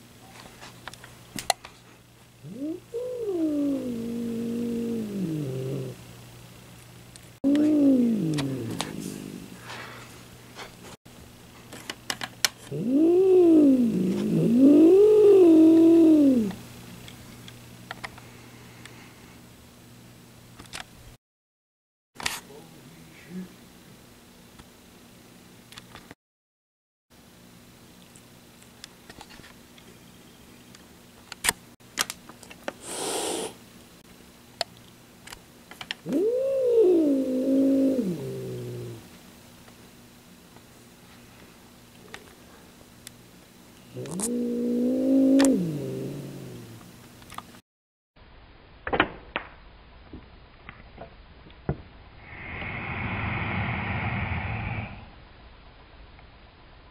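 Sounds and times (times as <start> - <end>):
cat hissing: 2.4 - 6.0, 7.5 - 10.0, 32.8 - 33.6, 36.0 - 39.0, 43.9 - 46.8, 52.3 - 55.0
cat yowling: 2.4 - 6.0, 7.5 - 9.4, 36.0 - 39.0, 44.0 - 46.8.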